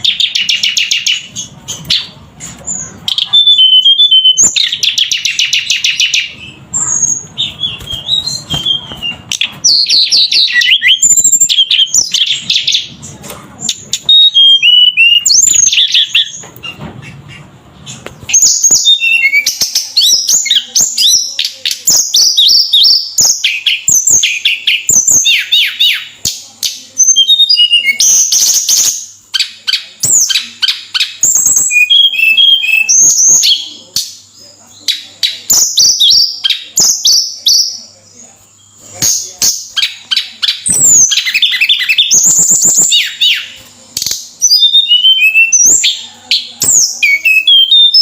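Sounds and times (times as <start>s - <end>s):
songbird singing trills: 0.0s - 48.0s.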